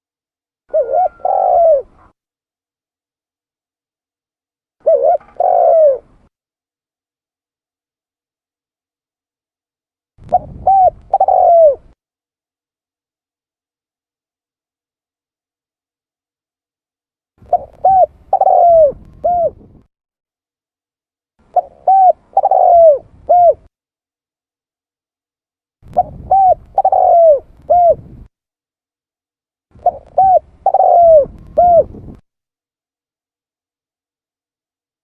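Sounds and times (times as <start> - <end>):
dove cooing: 0.7 - 2.2, 4.8 - 6.3, 10.2 - 12.0, 17.4 - 19.9, 21.5 - 23.7, 25.9 - 28.3, 29.8 - 32.2.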